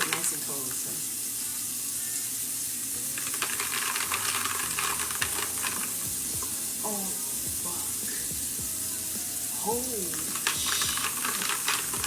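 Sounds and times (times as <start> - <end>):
steady hiss: 0.8 - 12.0
small clicks and crackles: 3.2 - 6.5, 10.1 - 12.0
person saying oh: 6.8 - 8.0.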